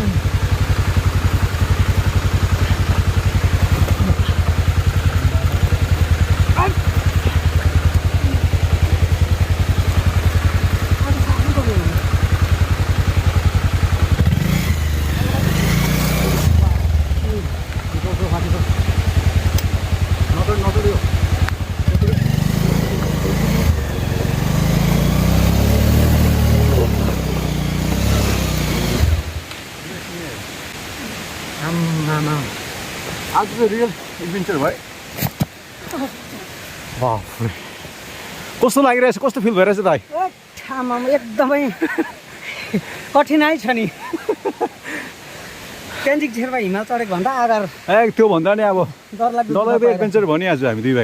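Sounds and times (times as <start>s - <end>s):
motorcycle engine running: 0.0s - 29.8s.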